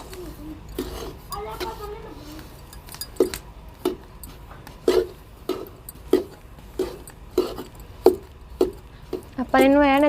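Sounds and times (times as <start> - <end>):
spatula scraping a pan: 0.0 - 2.7, 4.8 - 10.0.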